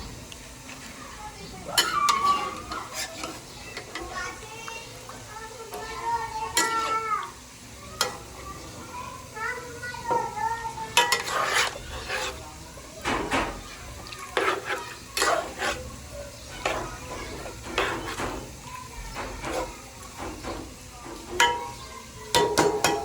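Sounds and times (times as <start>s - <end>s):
food sizzling: 0.0s - 23.0s
metal spatula scraping a pan: 1.8s - 4.3s, 5.7s - 7.0s, 10.9s - 12.5s, 13.2s - 21.8s.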